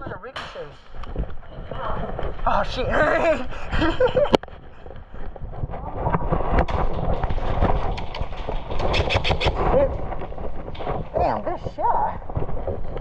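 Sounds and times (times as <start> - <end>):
footsteps: 0.0 - 13.0
microphone rumble: 0.0 - 13.0
sharp crack: 0.0 - 13.0
rapid sharp clicks: 6.5 - 13.0.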